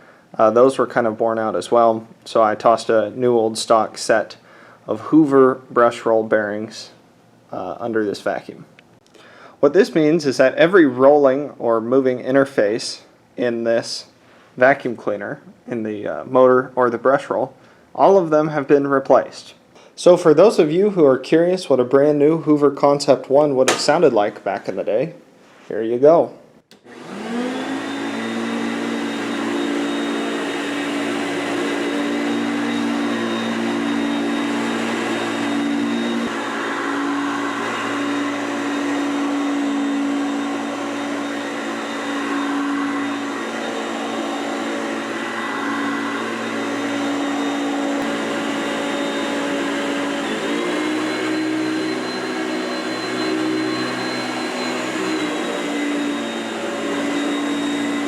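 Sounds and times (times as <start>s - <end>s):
vacuum cleaner running: 23.7s - 24.4s, 26.8s - 58.0s.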